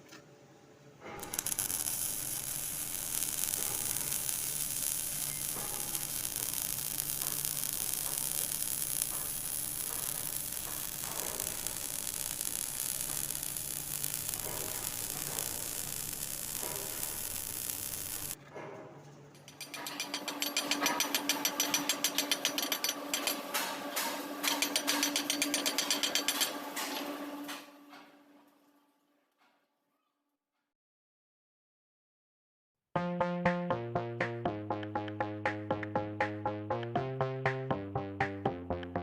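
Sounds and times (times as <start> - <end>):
welding arc crackling and sizzling: 1.2 - 18.4, 19.4 - 27.6.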